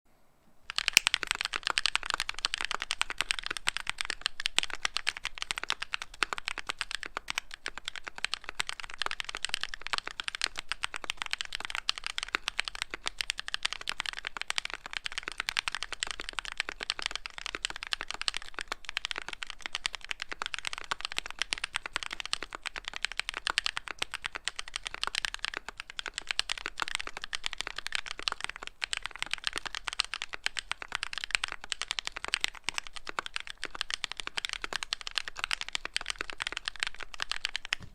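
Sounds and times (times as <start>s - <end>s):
mechanical keyboard typing: 0.7s - 37.9s.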